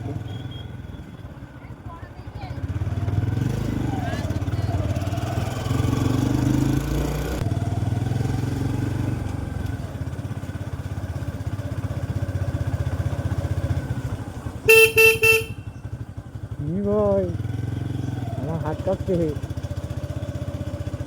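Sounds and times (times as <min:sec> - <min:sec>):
motorcycle engine running: 0:00.0 - 0:21.0
vehicle horn beeps: 0:00.2 - 0:01.2, 0:14.7 - 0:15.9.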